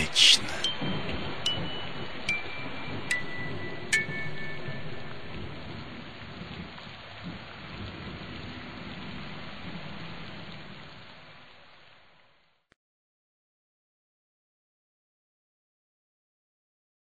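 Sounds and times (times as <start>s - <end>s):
steady rainfall: 0.0s - 12.7s
low rumbling thunder: 0.7s - 11.2s.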